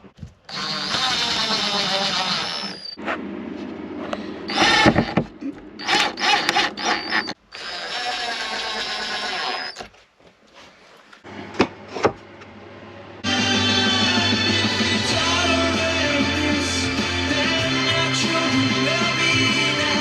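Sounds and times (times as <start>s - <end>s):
power drill running: 0.5s - 3.0s, 4.5s - 9.9s.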